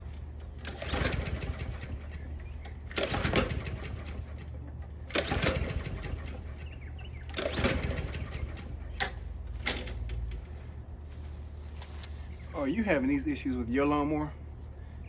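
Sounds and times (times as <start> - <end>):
mower engine cranking without starting: 0.0 - 10.5.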